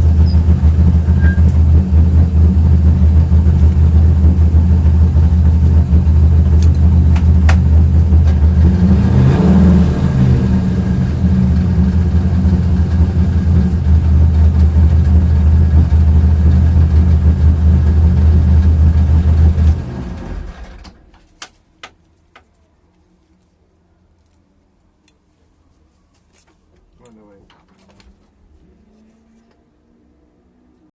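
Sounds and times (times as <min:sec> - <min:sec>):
car engine running with misfire: 0:00.0 - 0:21.0.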